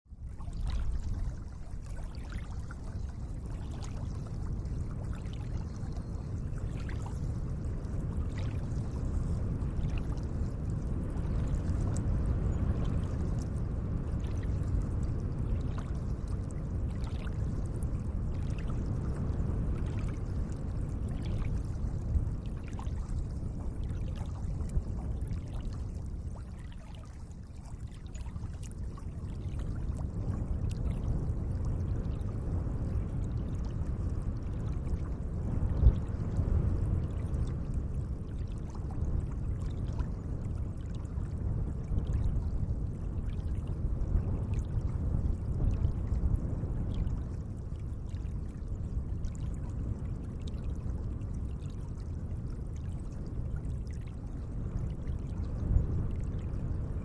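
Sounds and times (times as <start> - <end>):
small splashes and drips: 0.1 - 42.3
lake water lapping at shore: 0.2 - 7.4, 22.6 - 29.6.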